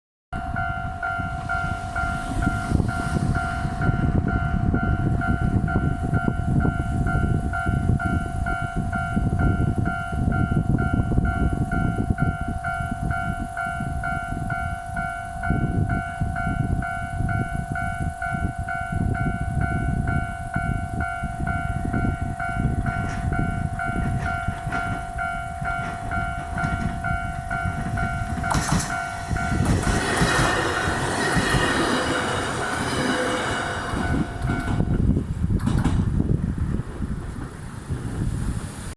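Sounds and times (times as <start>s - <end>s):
low rumbling noise: 0.4s - 9.5s
crossing warning bell: 0.4s - 35.3s
train rushing past: 0.4s - 38.9s.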